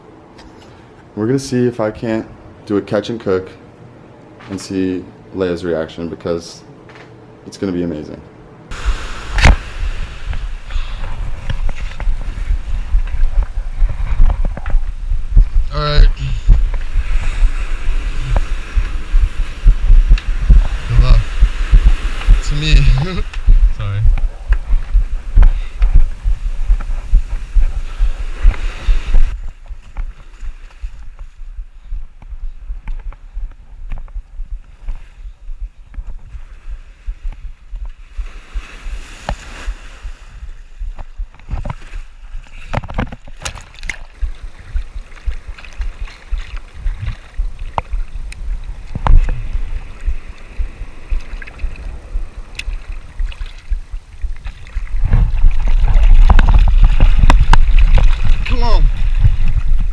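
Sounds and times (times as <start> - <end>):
water sloshing around camera: 8.7 - 32.3, 32.9 - 59.9
soft thuds: 16.4 - 39.8.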